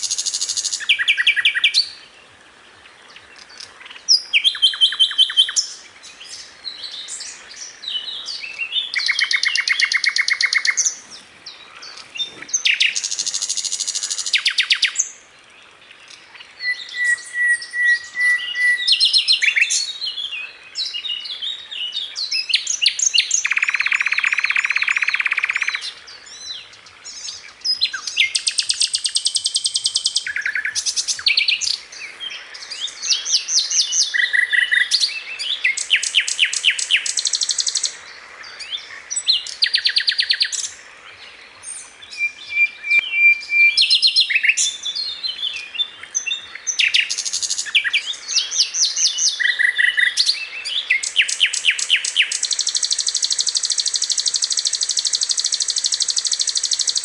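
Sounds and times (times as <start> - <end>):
flycatcher singing: 22.2 - 26.5, 27.1 - 38.0, 41.6 - 57.0.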